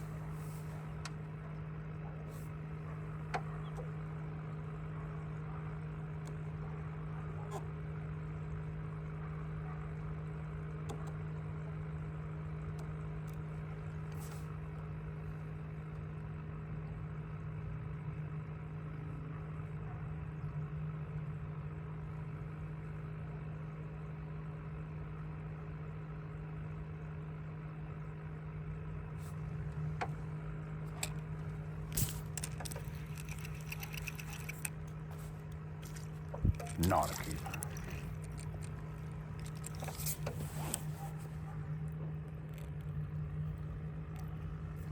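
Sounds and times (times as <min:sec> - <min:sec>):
boat motor humming: 0:00.0 - 0:15.7, 0:28.6 - 0:44.9
sharp clicks and knocks: 0:30.9 - 0:40.9.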